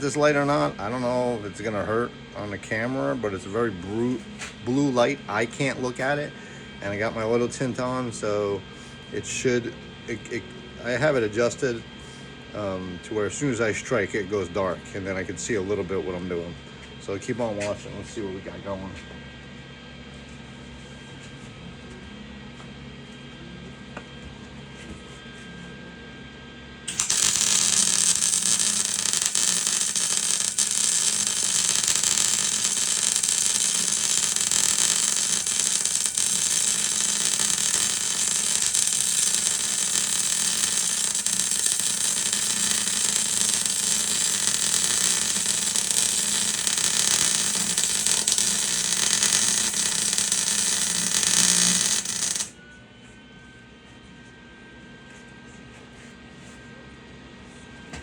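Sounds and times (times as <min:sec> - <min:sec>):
welder arc crackling hiss: 0:26.9 - 0:52.5.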